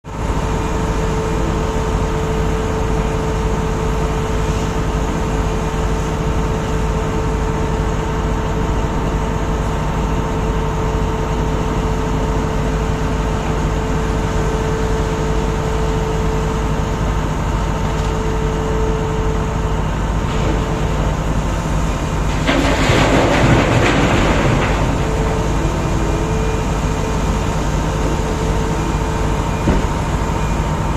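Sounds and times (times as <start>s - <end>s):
heavy diesel machinery droning: 0.0s - 30.9s
rock pouring into truck: 22.2s - 26.8s.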